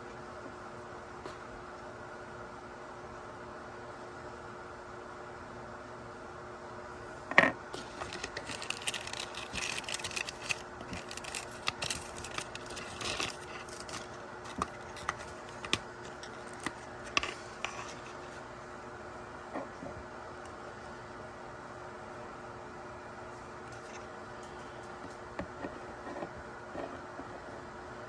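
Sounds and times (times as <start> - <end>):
plastic packaging being handled: 7.8 - 18.4.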